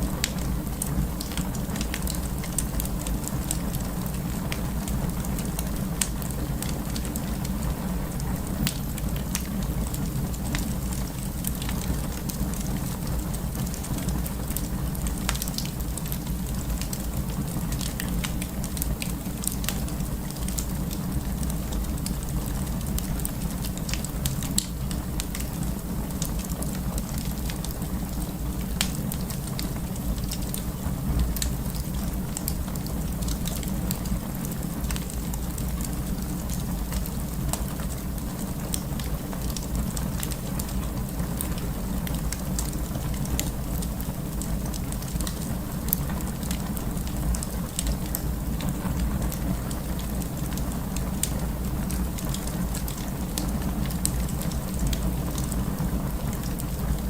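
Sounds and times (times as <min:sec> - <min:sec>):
burning wood crackling: 0:00.0 - 0:57.0.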